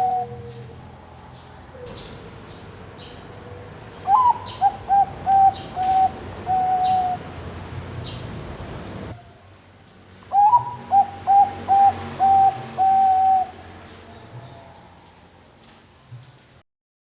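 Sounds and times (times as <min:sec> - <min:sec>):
dove cooing: 0:00.0 - 0:01.0, 0:01.6 - 0:07.4, 0:10.3 - 0:15.4.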